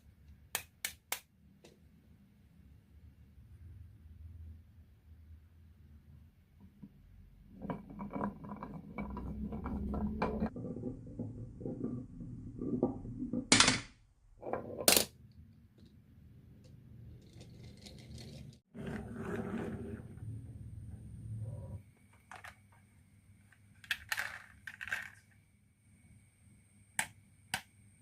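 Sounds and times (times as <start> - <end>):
marbles rolling and clattering: 7.4 - 13.8, 17.1 - 19.0, 23.6 - 25.4.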